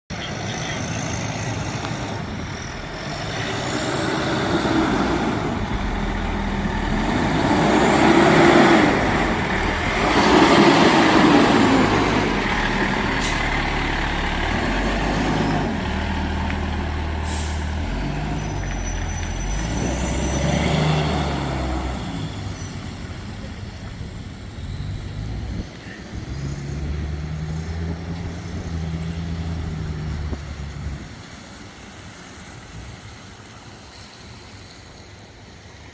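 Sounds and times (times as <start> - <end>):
diesel truck engines: 0.0 - 35.9
air brake hisses: 17.2 - 17.8.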